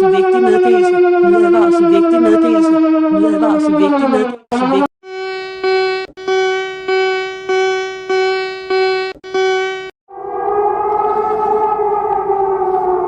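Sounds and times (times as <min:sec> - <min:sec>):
siren-like alarm tone: 0:00.0 - 0:13.0
electronic alert tone pulsing: 0:00.4 - 0:09.9.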